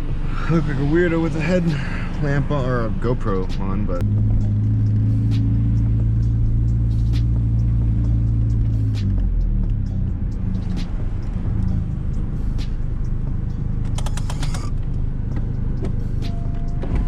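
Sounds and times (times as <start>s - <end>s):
car engine rumbling: 0.0s - 17.0s
creaking clicks: 13.8s - 17.0s.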